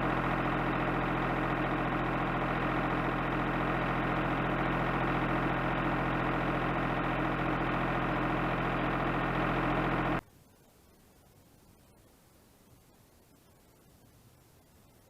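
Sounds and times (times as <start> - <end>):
motor humming: 0.0 - 10.2.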